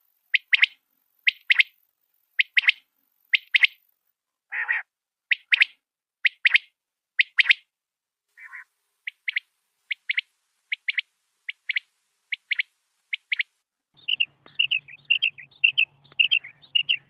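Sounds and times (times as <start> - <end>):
quail calling: 0.4 - 1.7, 2.4 - 2.8, 3.4 - 3.8, 4.5 - 7.7, 8.4 - 17.0
lower rougher quail call: 4.5 - 6.6, 8.4 - 17.0.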